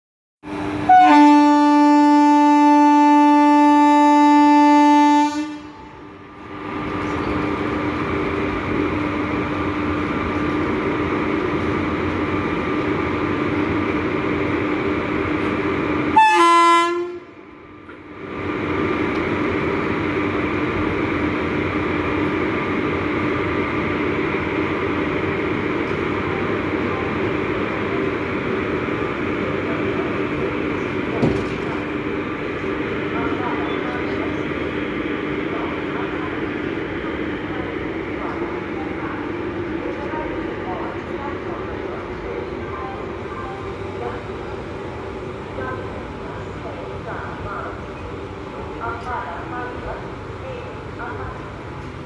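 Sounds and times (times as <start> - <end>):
train running noise: 0.4 - 52.0
locomotive horn: 0.8 - 6.0, 16.1 - 17.4.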